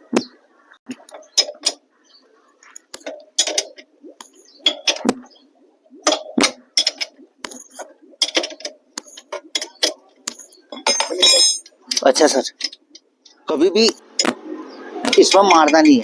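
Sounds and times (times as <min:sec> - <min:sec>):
metal hand tools clinking: 0:10.8 - 0:12.1.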